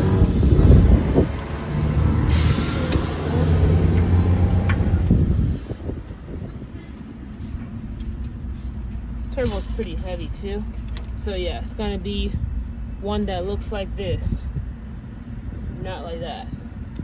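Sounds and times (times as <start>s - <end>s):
heavy vehicle engine running: 0.0s - 17.0s
air hiss: 2.3s - 4.2s.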